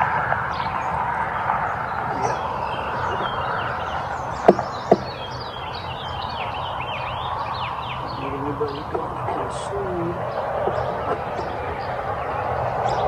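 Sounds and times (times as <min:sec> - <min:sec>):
small birds chirping: 0:00.0 - 0:13.0
steady background noise: 0:00.0 - 0:13.0
sharp knocks: 0:04.4 - 0:05.2.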